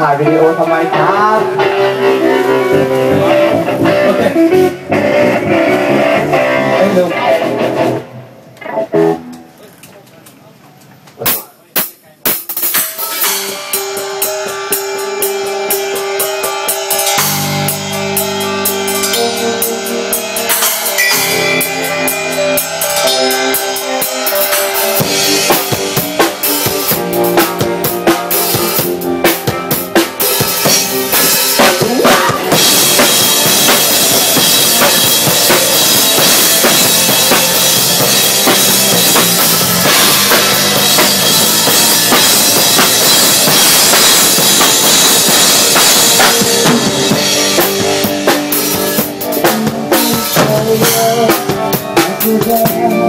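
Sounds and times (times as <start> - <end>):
drum kit: 0.0 - 9.5, 10.9 - 53.0
band playing: 0.0 - 9.6, 11.2 - 53.0
cymbals washing: 12.4 - 51.3.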